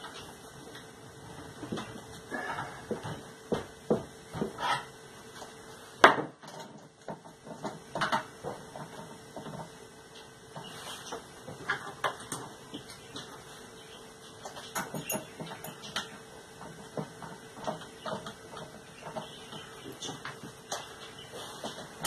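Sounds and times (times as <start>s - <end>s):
clinks and knocks of tools: 14.4s - 19.2s.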